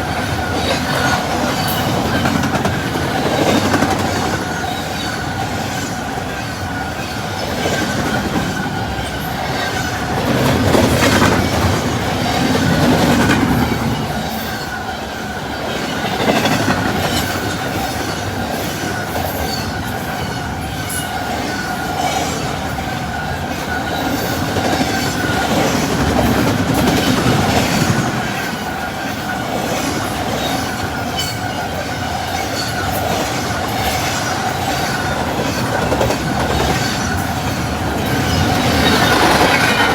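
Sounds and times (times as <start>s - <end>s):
clickety-clack over rail joints: 0.0s - 39.9s
train wheels rumbling on rails: 0.0s - 39.9s
ringing tone from wheels: 13.6s - 39.9s.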